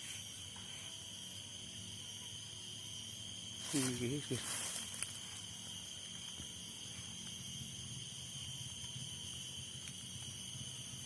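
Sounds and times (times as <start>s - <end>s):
insects chirping chorus: 0.0s - 11.0s.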